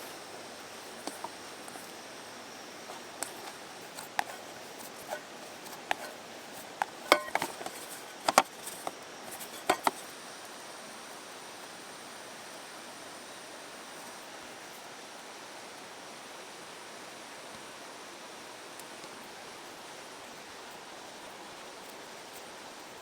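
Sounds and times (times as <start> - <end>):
steady hiss: 0.0 - 23.0
sharp clicks and knocks: 6.8 - 10.0.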